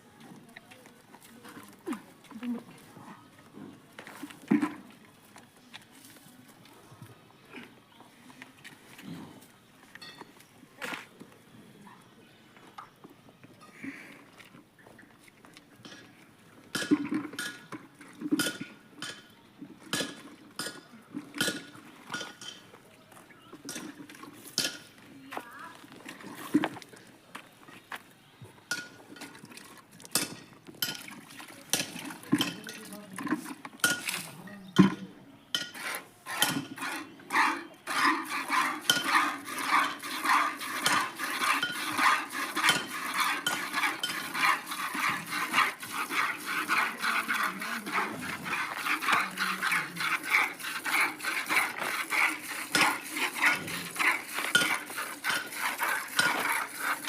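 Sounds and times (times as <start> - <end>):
milk squirts ringing on metal: 35.7 - 57.0.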